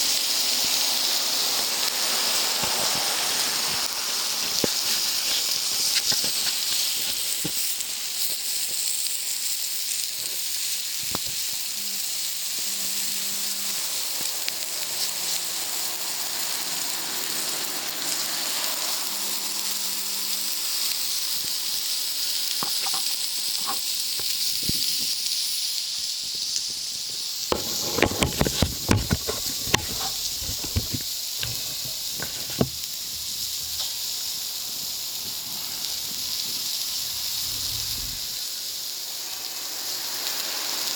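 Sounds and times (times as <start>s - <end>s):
food sizzling on a griddle: 0.0s - 40.9s
sharp clicks and knocks: 27.5s - 32.8s.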